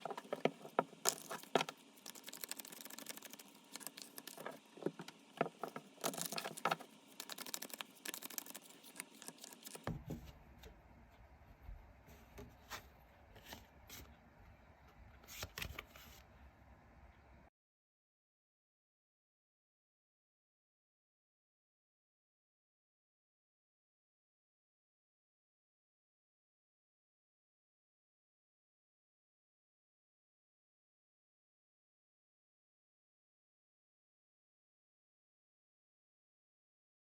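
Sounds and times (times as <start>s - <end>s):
cards shuffling: 0.0s - 10.0s.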